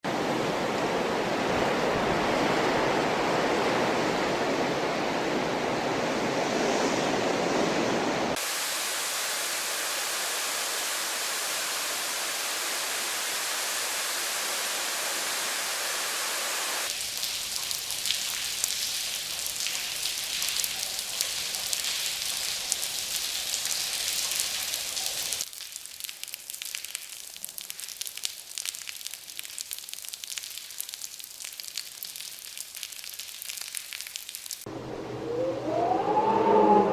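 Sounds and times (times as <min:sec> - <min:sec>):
wind blowing: 0:00.0 - 0:08.6, 0:34.7 - 0:36.9
hard rain hissing: 0:08.3 - 0:26.0
hard rain spattering on concrete: 0:16.8 - 0:34.7
light rain pattering on concrete: 0:16.9 - 0:34.7.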